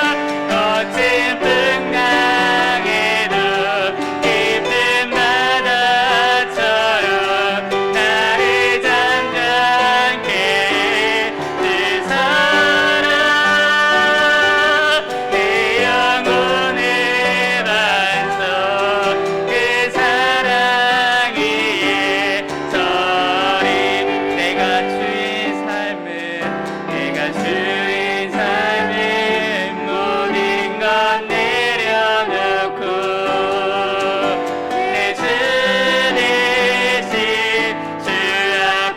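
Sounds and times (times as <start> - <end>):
people singing worship song: 0.0 - 38.9
piano accompaniment: 0.0 - 38.9.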